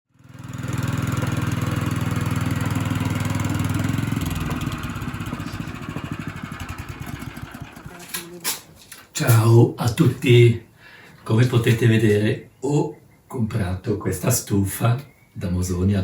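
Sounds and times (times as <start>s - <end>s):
engine pulsing drone: 0.3s - 8.1s.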